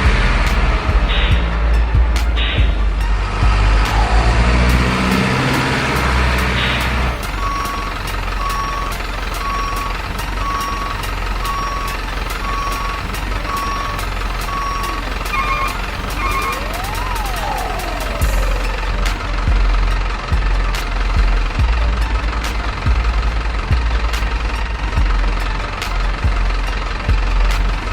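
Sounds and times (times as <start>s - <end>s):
engine running: 0.0s - 27.9s
low hum: 0.0s - 27.9s
reversing alarm beeps: 6.6s - 19.0s.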